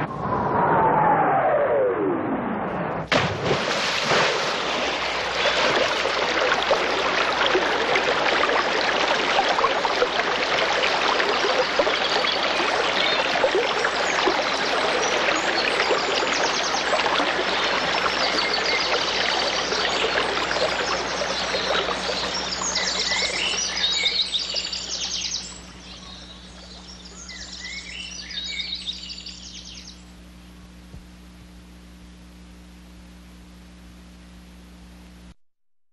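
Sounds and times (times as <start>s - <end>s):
water rushing: 3.1s - 26.3s
birds chirping: 11.5s - 30.1s.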